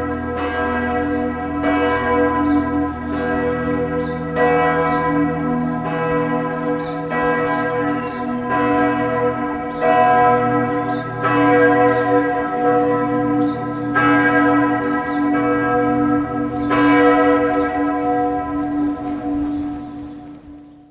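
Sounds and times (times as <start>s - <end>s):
church bells pealing: 0.0s - 20.9s.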